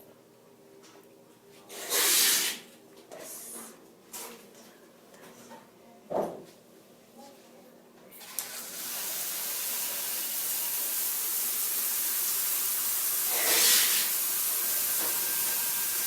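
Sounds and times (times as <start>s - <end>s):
water spraying from shower head: 8.2s - 16.0s.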